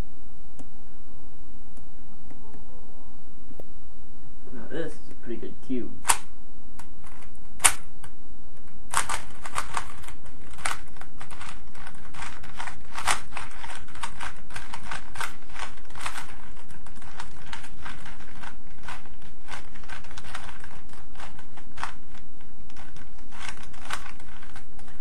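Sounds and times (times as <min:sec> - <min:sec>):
puzzle cube clacks: 0:08.9 - 0:25.0.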